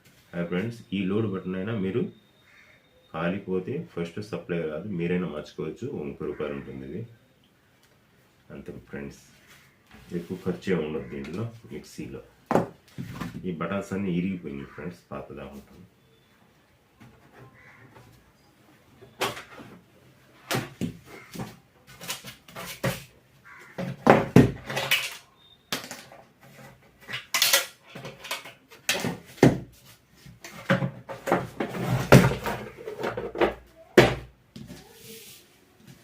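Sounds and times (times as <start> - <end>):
hard parts and tools clattering: 23.8 - 29.5, 30.4 - 33.7.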